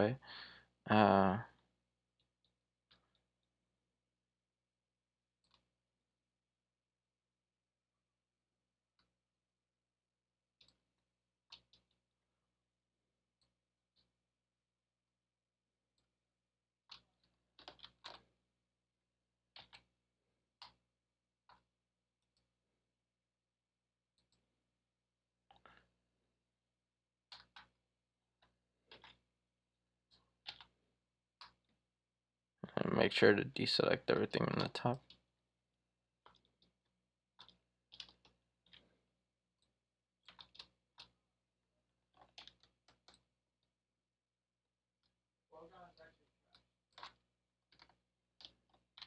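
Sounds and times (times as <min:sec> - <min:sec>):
keyboard and mouse clicks: 0:16.9 - 0:18.3, 0:19.5 - 0:19.9, 0:30.1 - 0:30.8, 0:34.2 - 0:35.2, 0:37.4 - 0:38.9, 0:39.6 - 0:41.2.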